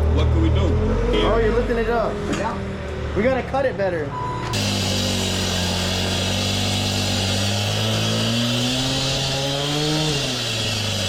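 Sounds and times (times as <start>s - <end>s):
skid steer engine running: 4.5s - 11.0s
loud high hiss: 4.6s - 11.0s.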